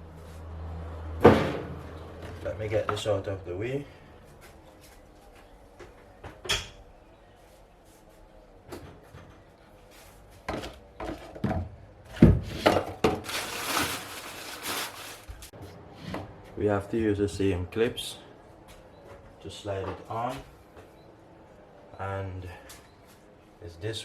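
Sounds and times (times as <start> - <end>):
scraping rustle: 13.2 - 15.5.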